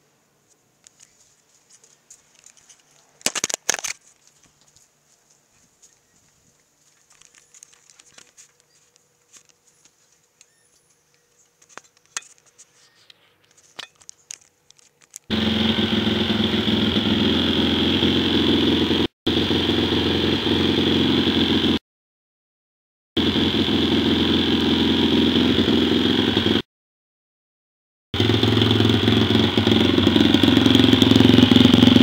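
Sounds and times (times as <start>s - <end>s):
faint clicks and rustles: 0.4s - 15.3s
motorbike engine running: 15.3s - 21.8s, 23.2s - 26.6s, 28.2s - 32.0s.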